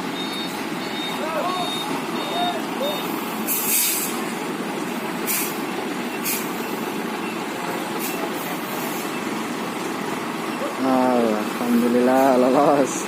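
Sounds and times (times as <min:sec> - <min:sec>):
heavy truck engine running: 0:00.0 - 0:13.0
air brake hisses: 0:03.5 - 0:04.2, 0:05.3 - 0:05.6, 0:06.2 - 0:06.6.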